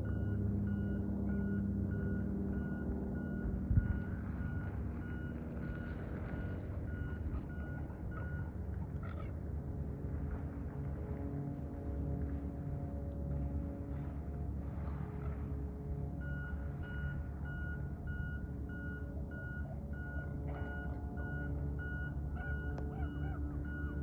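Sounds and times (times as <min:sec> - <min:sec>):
vehicle reverse alarm beeping: 0:00.0 - 0:08.6, 0:16.1 - 0:24.0
low engine rumble: 0:00.0 - 0:24.0.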